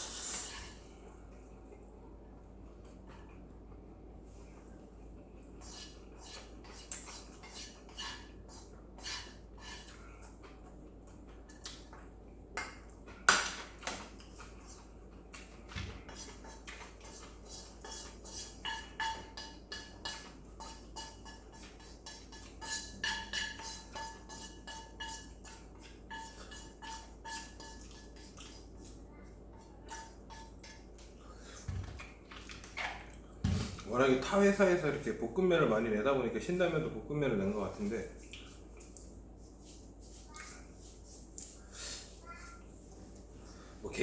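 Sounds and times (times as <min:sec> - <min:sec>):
utensils clinking against a dish: 0:12.6 - 0:31.7.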